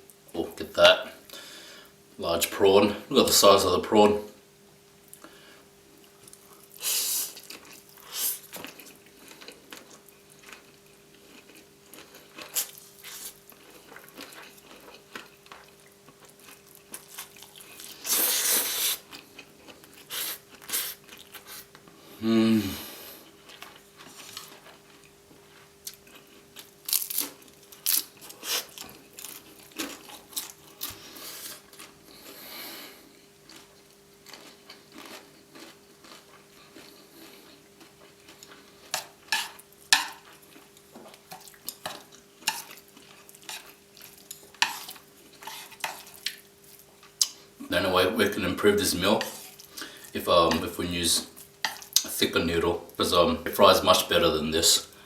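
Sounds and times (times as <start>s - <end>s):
chewing and crunching food: 6.0s - 22.0s, 23.1s - 53.0s
person humming mm: 22.2s - 23.2s.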